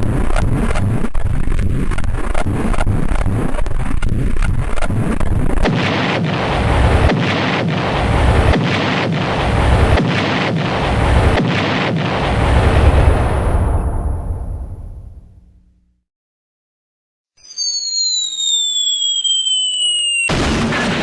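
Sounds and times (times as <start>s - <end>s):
rumbling explosions: 0.0s - 15.8s, 18.5s - 21.0s
rapid gunshots: 1.8s - 12.4s, 20.3s - 21.0s.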